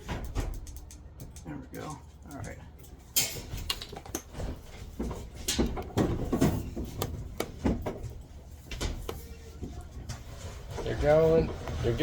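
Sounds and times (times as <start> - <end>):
bumps and scrapes of dryer: 3.0 - 12.0.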